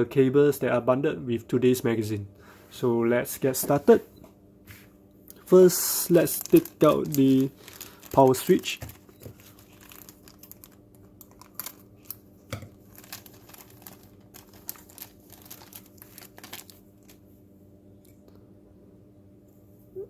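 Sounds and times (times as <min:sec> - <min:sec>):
plastic packaging crinkling: 0:05.4 - 0:17.3.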